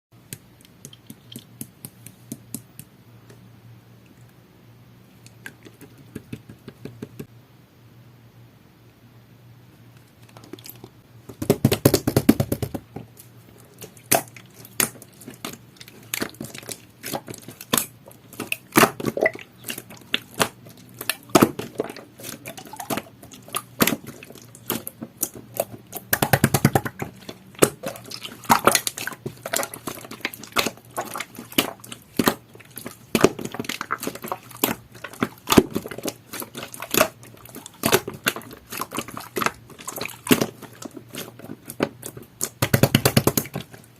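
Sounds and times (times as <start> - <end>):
slime squished by hand: 13.7 - 43.9.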